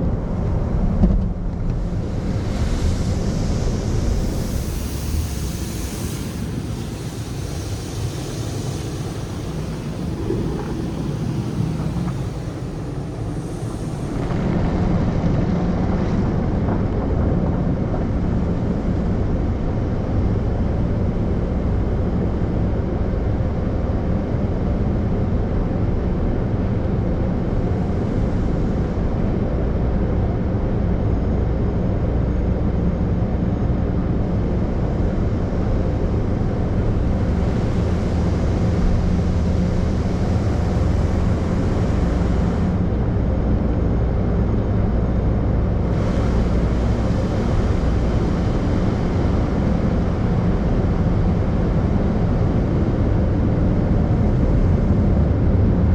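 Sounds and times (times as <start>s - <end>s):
car wash equipment rushing: 2.0s - 18.9s.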